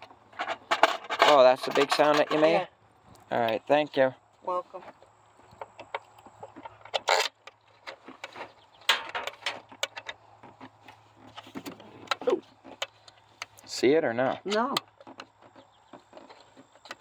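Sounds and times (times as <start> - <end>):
metal parts and tools clinking: 0.3 - 2.6, 5.8 - 13.6.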